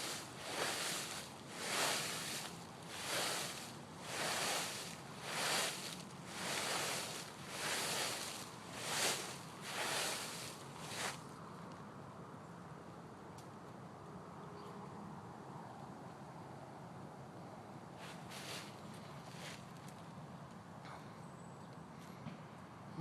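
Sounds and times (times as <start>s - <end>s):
dry leaves swishing: 0.0s - 11.3s, 18.0s - 19.6s.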